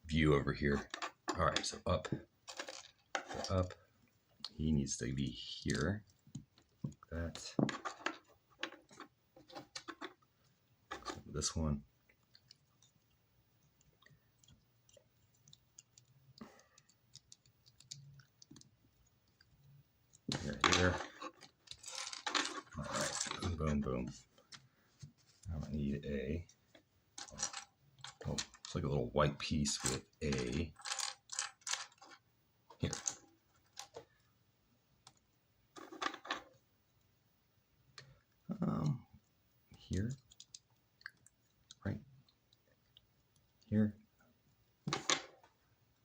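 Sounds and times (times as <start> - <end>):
plastic pieces clicking and rattling: 2.5 - 3.5, 20.3 - 23.5, 27.2 - 28.7, 30.3 - 32.2, 32.8 - 34.0.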